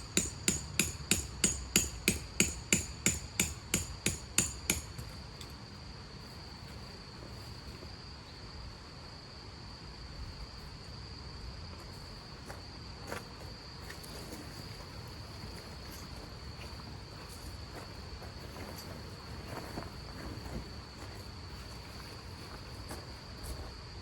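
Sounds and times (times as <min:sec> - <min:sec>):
cricket trilling: 0:00.0 - 0:24.0.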